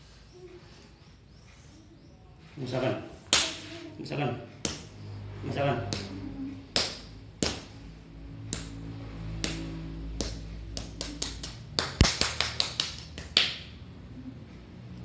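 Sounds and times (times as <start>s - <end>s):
steady low hum: 0.0s - 15.0s
slaps and finger strikes on skin: 4.6s - 4.9s, 5.9s - 6.1s, 6.7s - 7.8s, 8.4s - 8.8s, 9.4s - 13.7s.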